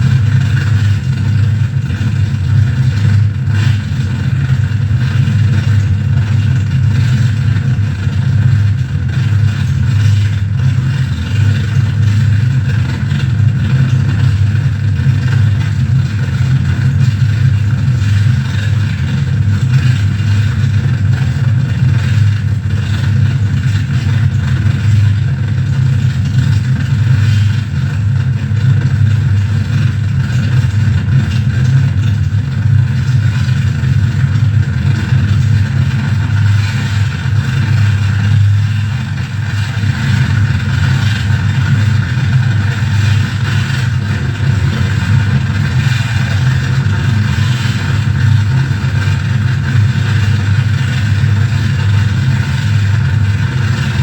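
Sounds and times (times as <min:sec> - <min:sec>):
harsh noise drone: 0:00.0 - 0:54.0.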